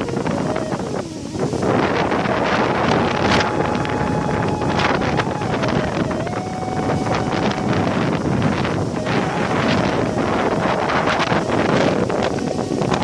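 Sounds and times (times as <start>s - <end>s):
faint steady hum: 0.0s - 13.0s
wind buffeting microphone: 0.0s - 13.0s.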